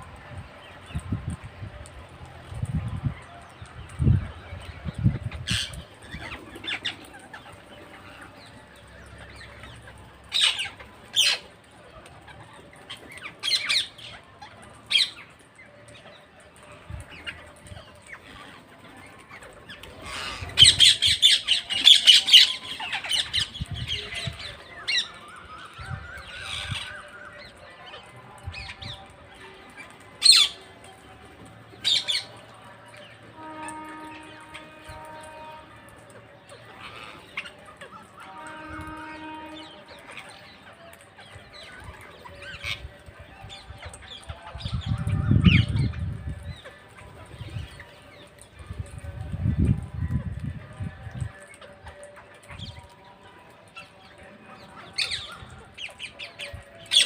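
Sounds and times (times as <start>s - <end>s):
parrots squawking: 36.8s - 38.7s.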